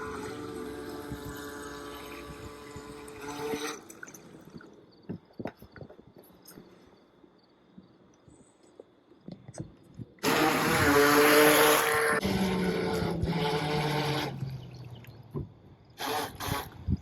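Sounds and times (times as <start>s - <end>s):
small motor whirring: 0.0s - 4.4s, 10.2s - 15.0s, 16.0s - 17.0s.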